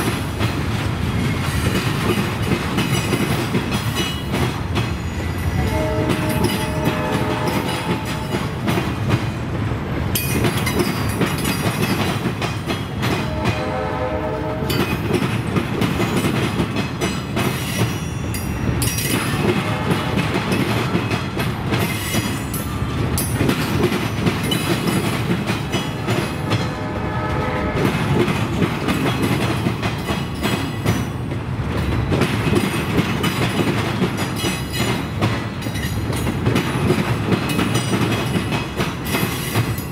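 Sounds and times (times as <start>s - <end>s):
train wheels clicking over rail joints: 0.0s - 13.8s, 14.7s - 26.9s, 27.7s - 39.9s
locomotive horn blasts: 5.6s - 8.6s, 13.2s - 15.0s, 19.4s - 20.6s, 26.4s - 28.3s.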